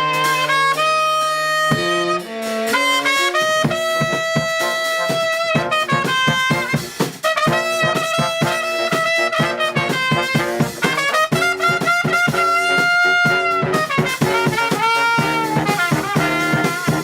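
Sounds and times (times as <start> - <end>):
brass band playing: 0.0 - 17.0.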